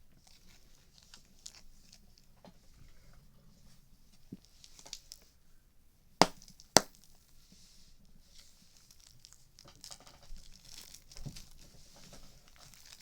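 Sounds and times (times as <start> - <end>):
loud sharp pop: 6.2 - 7.0
faint clicks and crackles: 8.4 - 13.0.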